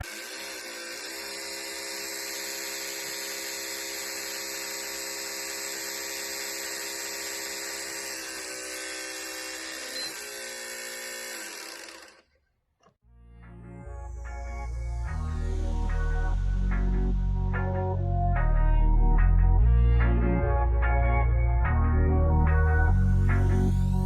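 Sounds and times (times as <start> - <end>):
disc drive mechanical whine: 0.0 - 8.4, 9.8 - 10.4.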